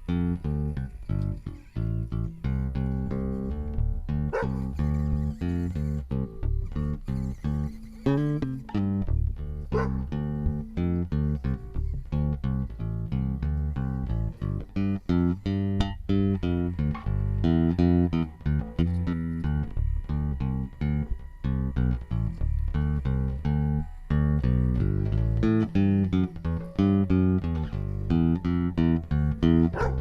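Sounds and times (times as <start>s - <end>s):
guitar: 0.0s - 30.0s
plucked bass guitar run: 0.0s - 30.0s.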